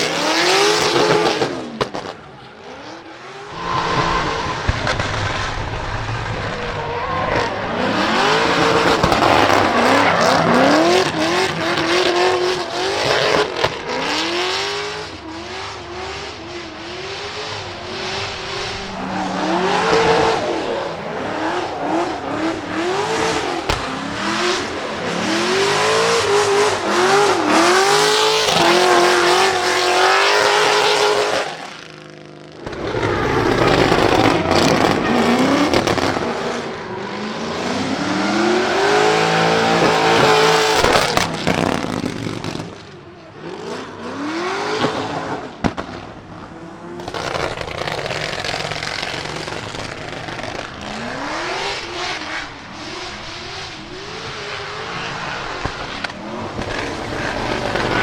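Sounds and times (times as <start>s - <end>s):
engine revving hard: 3.2s - 31.6s, 47.1s - 58.0s
exhaust crackles: 16.3s - 29.8s, 47.0s - 58.0s
tyres squealing: 17.4s - 26.3s.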